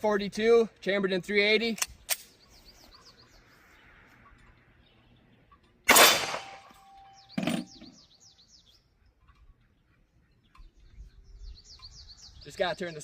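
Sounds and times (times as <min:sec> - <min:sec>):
birds chirping: 0:00.1 - 0:13.0
pistol shot: 0:05.9 - 0:06.8.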